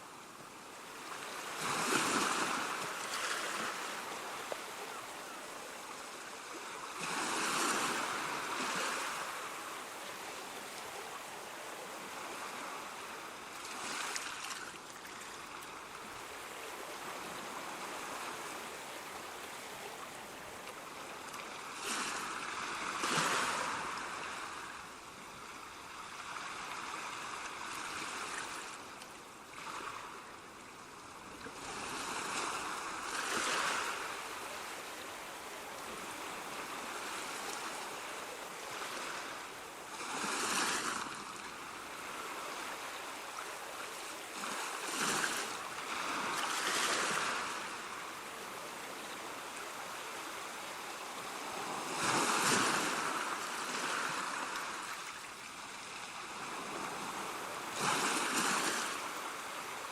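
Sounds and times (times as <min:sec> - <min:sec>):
ocean waves on shore: 0:00.0 - 0:59.9.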